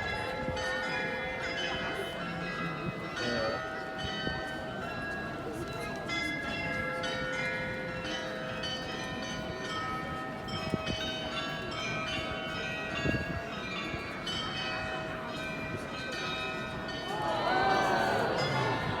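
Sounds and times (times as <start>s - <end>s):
glockenspiel bells playing a tune: 0.0s - 19.0s.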